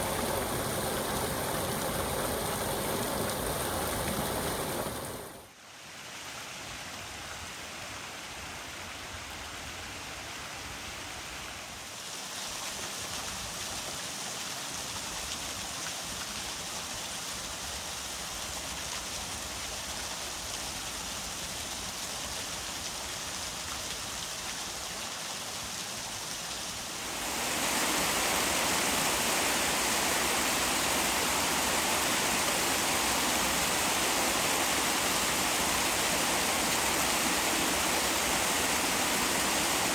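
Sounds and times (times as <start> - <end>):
running water rushing: 0.0 - 6.6, 19.2 - 39.9.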